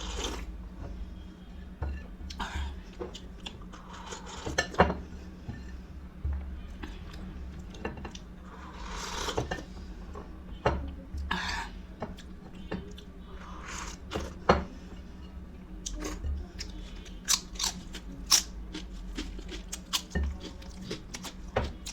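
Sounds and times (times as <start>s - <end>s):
person chewing and crunching food: 15.8s - 21.9s.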